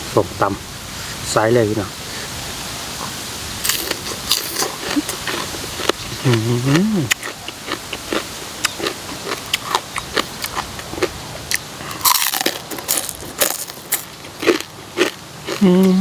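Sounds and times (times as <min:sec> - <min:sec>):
crunchy chewing: 0:03.0 - 0:16.0
person humming: 0:06.1 - 0:07.2, 0:15.6 - 0:16.0.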